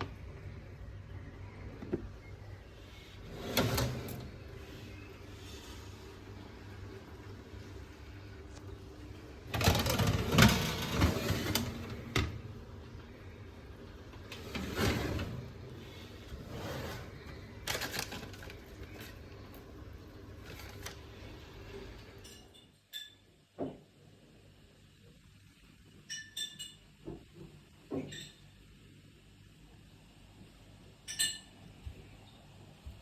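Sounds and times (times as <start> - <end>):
objects rustling and clattering: 9.5 - 12.4, 14.2 - 19.7.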